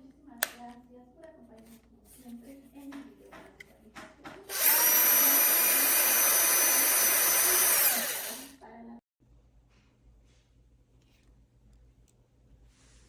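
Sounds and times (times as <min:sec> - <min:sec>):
cordless drill whining: 0:04.5 - 0:08.5.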